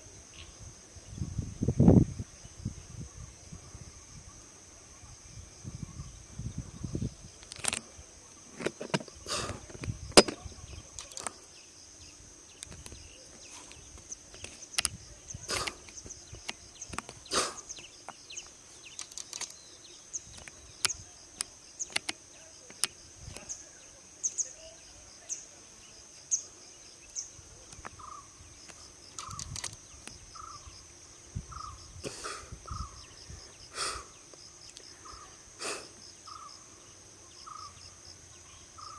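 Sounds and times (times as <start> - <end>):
insect drone: 0.0 - 38.9
sharp clicks and knocks: 8.6 - 10.4, 20.4 - 22.9.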